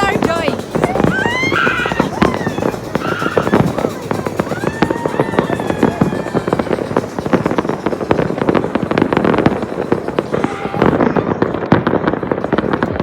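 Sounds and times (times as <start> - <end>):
fireworks crackling bangs: 0.0 - 13.0
high whistle: 0.4 - 8.6.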